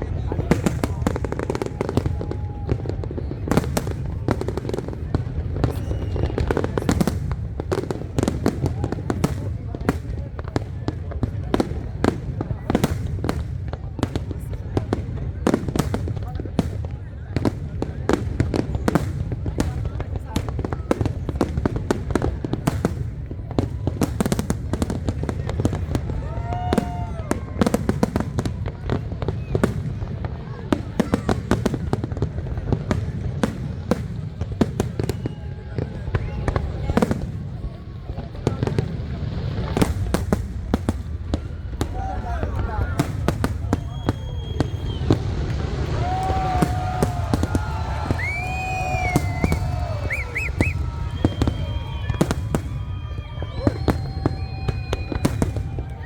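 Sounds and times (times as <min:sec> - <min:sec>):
fireworks bangs and crackles: 0:00.0 - 0:56.0
firework whistling: 0:05.5 - 0:07.3, 0:43.4 - 0:56.0.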